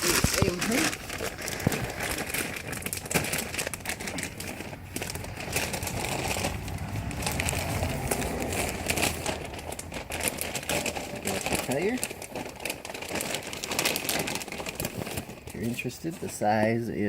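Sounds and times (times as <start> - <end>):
rustling: 0.0 - 17.0.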